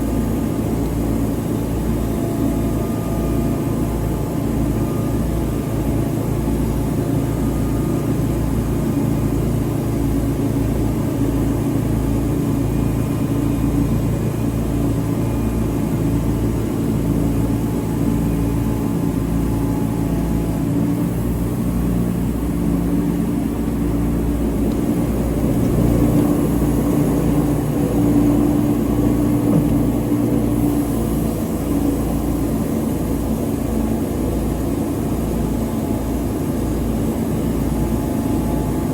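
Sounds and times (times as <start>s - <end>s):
engine running under load: 17.6s - 33.2s.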